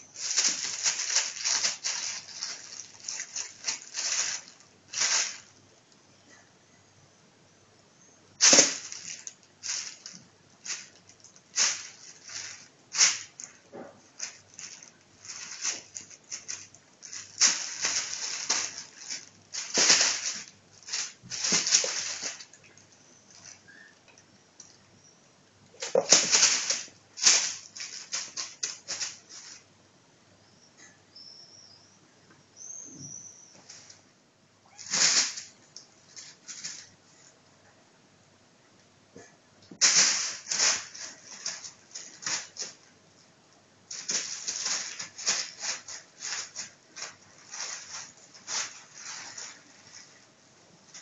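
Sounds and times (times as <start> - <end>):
plastic bag rustling: 0.0 - 5.6, 8.4 - 24.0, 25.7 - 29.7, 34.7 - 37.3, 39.7 - 43.0, 43.8 - 51.0.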